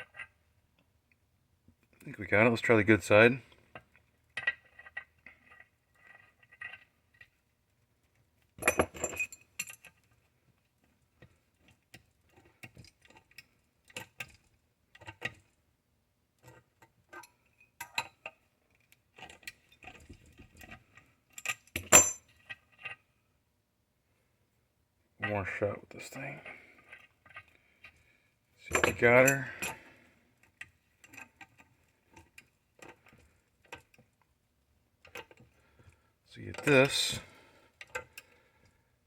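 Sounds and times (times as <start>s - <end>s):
hand tools clinking on metal: 28.6s - 29.9s, 36.4s - 37.2s.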